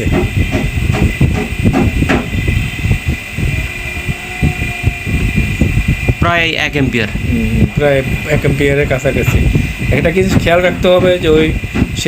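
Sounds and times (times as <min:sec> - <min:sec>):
compressor running with uneven rumble: 0:00.0 - 0:12.0.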